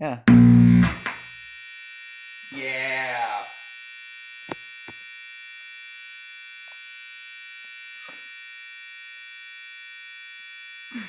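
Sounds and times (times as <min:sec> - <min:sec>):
high-pitched electric buzz: 0:00.3 - 0:11.0.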